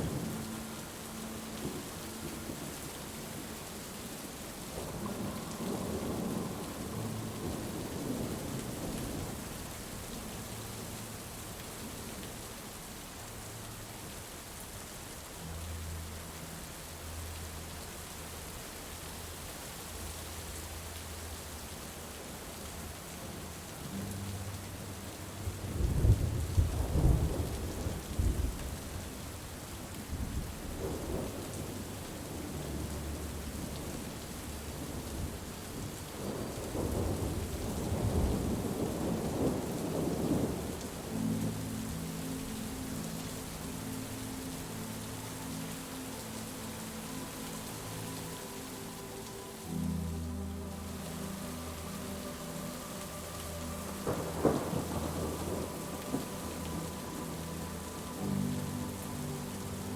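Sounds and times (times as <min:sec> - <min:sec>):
steady rain: 0:00.0 - 0:59.9
thunder rumbling: 0:25.4 - 0:44.0, 0:50.7 - 0:59.9.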